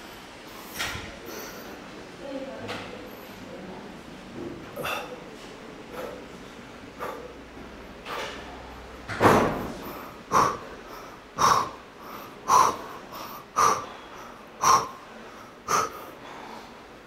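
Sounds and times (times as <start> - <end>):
person exhaling forcefully: 9.4 - 15.0, 15.7 - 16.6.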